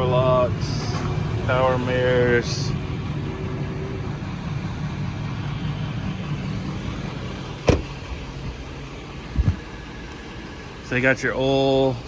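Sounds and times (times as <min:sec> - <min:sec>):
diesel engine idling: 0:00.0 - 0:12.0
low thump: 0:07.6 - 0:08.0.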